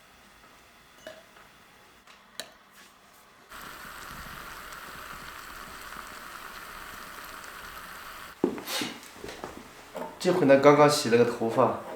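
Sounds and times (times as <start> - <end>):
water boiling hiss: 0.0 - 2.0, 3.5 - 9.0.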